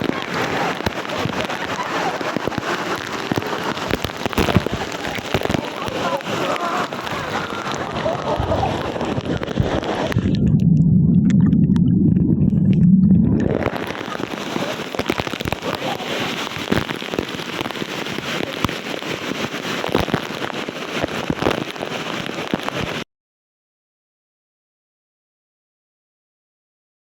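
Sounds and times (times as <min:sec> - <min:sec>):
waterfall stream splashing: 0:00.0 - 0:10.4, 0:13.4 - 0:23.0
loud low rumble: 0:08.3 - 0:14.0.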